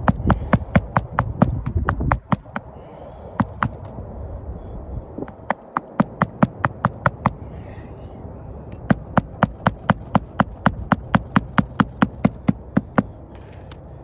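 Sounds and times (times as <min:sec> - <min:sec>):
hammer driving nails into shingle: 0:00.0 - 0:02.8, 0:03.4 - 0:03.9, 0:05.3 - 0:07.5, 0:08.9 - 0:13.8.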